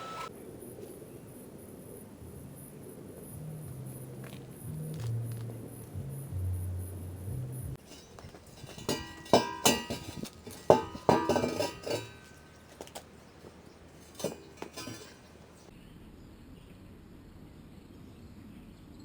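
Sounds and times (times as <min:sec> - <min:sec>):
metal clanks and clinks: 0:07.7 - 0:15.7.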